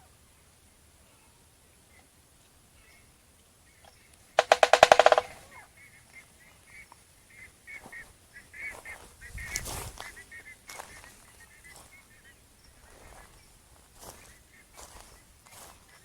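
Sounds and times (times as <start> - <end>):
bird fast repeated notes: 4.4 - 5.5.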